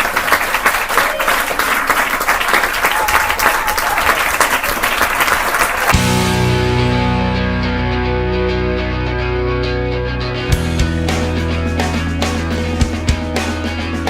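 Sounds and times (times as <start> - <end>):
audience applauding: 0.0 - 6.2
music: 5.9 - 14.0.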